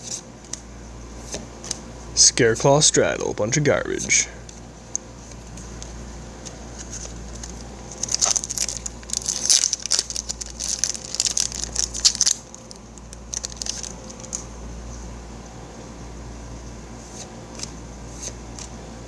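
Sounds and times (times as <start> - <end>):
foil wrapper crinkling: 6.7 - 14.5.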